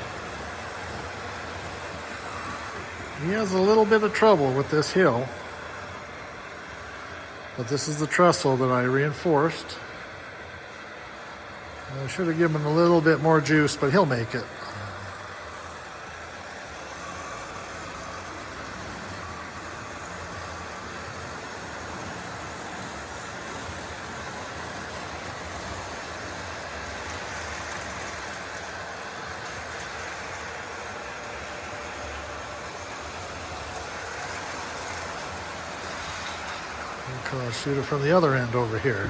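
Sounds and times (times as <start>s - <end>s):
model train running on track: 0.0s - 39.0s.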